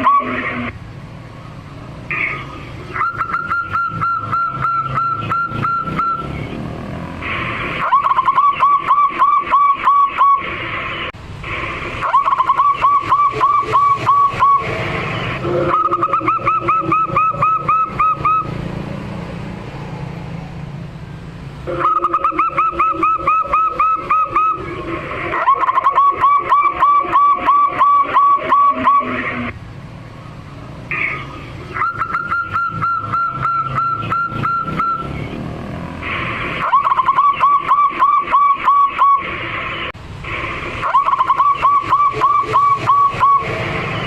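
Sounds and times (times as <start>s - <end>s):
dove cooing: 12.1s - 14.6s, 15.4s - 18.5s, 21.7s - 24.6s, 25.4s - 29.2s, 40.9s - 43.4s.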